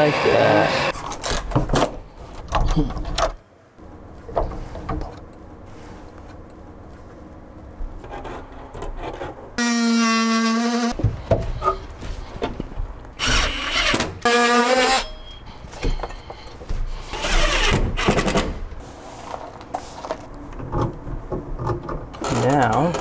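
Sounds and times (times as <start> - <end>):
power drill whining: 0.0 - 0.9, 13.2 - 15.2, 17.1 - 18.4.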